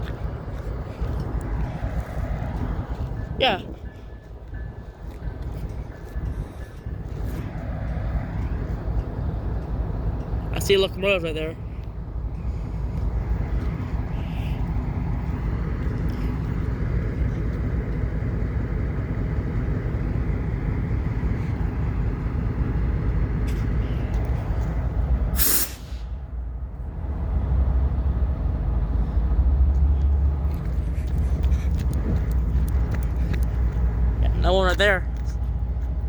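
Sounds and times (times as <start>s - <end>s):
low engine rumble: 0.0s - 36.0s
hiss of released air: 25.3s - 26.2s.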